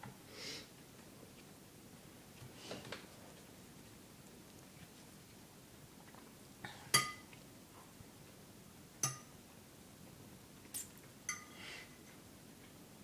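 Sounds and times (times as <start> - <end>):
cutlery clinking against dishes: 6.9 - 7.3.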